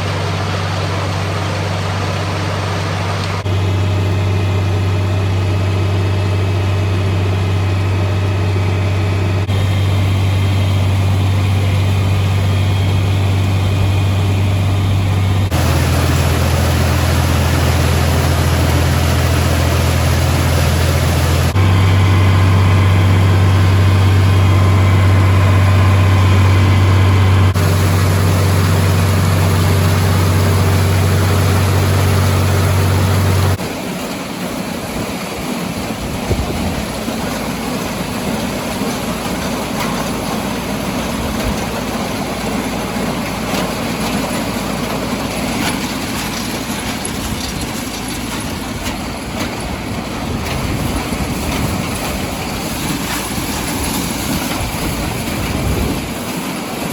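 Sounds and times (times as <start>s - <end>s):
tractor engine running: 0.0s - 56.9s
rough running noise: 27.5s - 56.9s.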